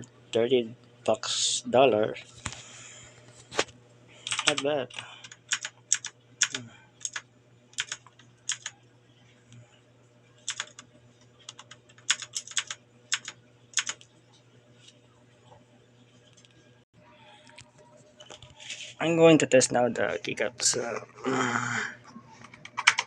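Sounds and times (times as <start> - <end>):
mechanical keyboard clacks: 4.2 - 7.2, 7.8 - 8.7, 10.5 - 10.8, 11.5 - 14.0, 22.6 - 23.0.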